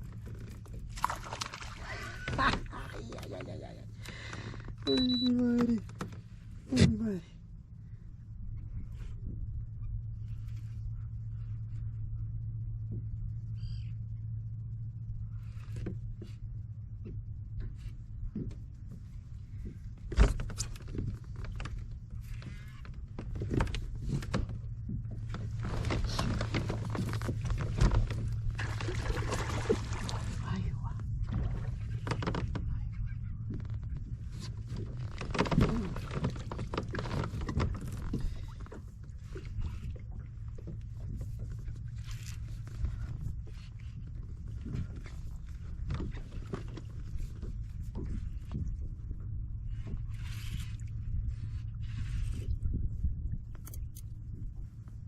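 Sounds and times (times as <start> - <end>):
wind rumble on microphone: 0.0 - 4.9, 5.9 - 55.0
steady low hum: 0.0 - 55.0
kayak knocks and clatter: 0.2 - 3.4, 18.3 - 30.3, 31.2 - 43.2, 44.0 - 48.9.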